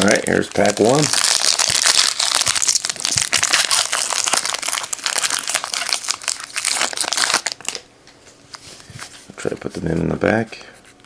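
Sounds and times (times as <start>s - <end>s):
plastic wrapper crinkling: 0.0s - 7.8s.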